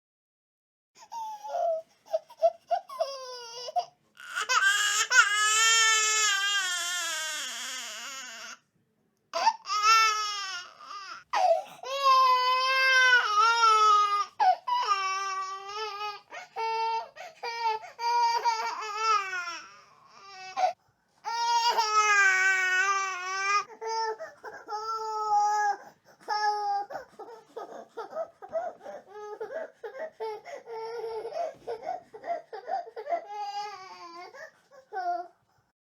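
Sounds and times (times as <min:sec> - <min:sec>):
baby crying: 0:01.0 - 0:08.6, 0:09.4 - 0:35.4
baby sobbing and laughing: 0:09.4 - 0:35.3.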